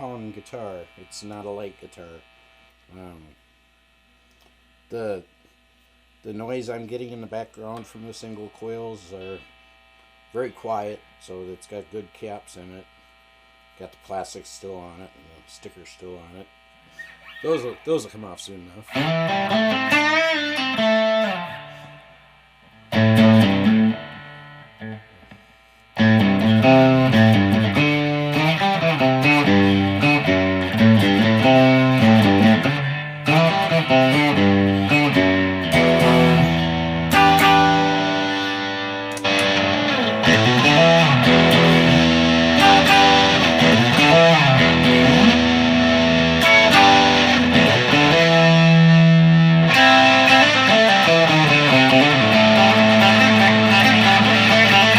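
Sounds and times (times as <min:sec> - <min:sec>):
electric guitar through amplifier: 0:00.0 - 0:54.9.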